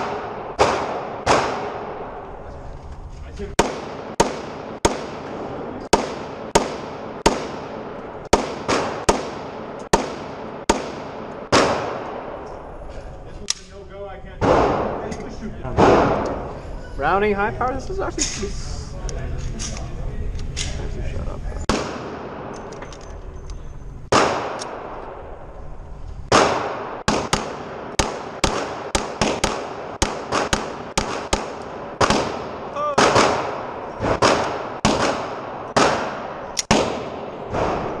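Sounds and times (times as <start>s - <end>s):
pistol shots with reverberation: 0.0s - 2.2s, 3.6s - 12.5s, 14.4s - 15.0s, 21.7s - 22.8s, 24.1s - 25.3s, 26.3s - 38.0s.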